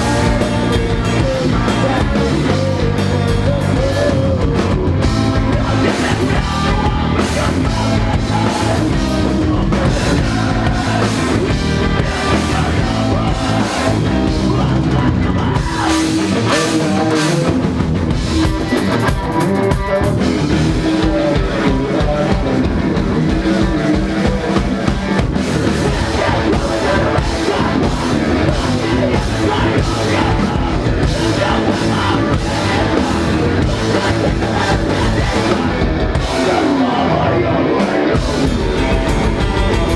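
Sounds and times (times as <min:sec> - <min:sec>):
drum kit: 0:00.0 - 0:39.9
rock band playing live: 0:00.0 - 0:39.9.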